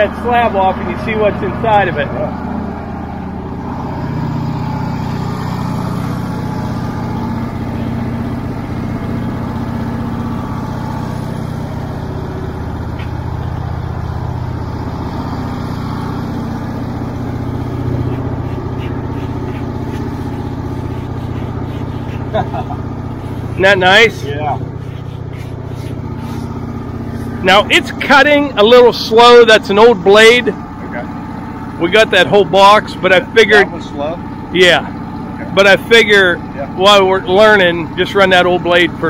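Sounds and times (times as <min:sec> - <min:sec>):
sawmill engine running: 0:00.0 - 0:39.0
band blade cutting log: 0:17.3 - 0:28.3.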